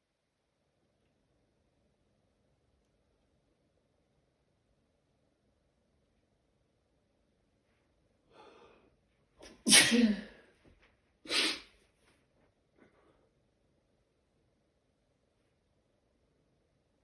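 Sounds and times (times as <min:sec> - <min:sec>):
person sneezing: 0:09.4 - 0:10.4, 0:11.3 - 0:11.7.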